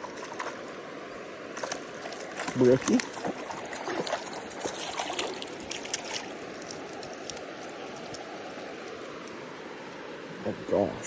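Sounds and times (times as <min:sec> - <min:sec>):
small splashes and ticks: 0:00.0 - 0:00.8, 0:01.6 - 0:09.4
stream flowing: 0:00.0 - 0:11.0.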